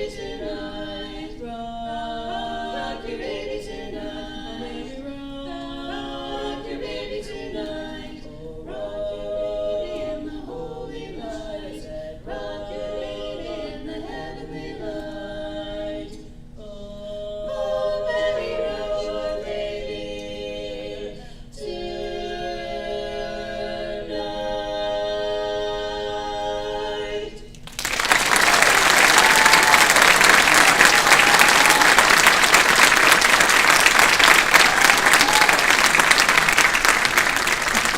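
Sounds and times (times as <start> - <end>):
a cappella group singing harmony: 0.0 - 27.6.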